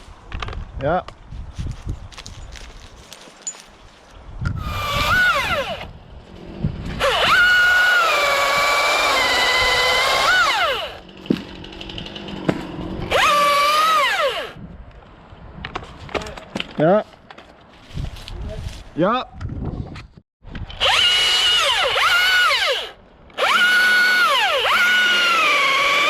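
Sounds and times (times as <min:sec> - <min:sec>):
chainsaw revving: 0:04.6 - 0:05.9, 0:06.9 - 0:14.6, 0:20.8 - 0:26.0.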